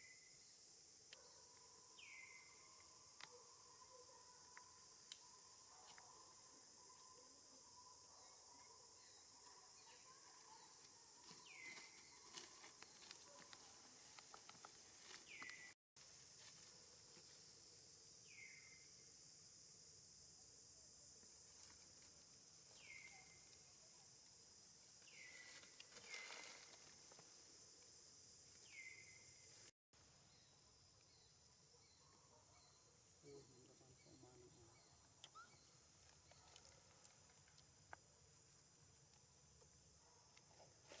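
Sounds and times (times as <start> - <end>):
insects droning: 0.0 - 41.0.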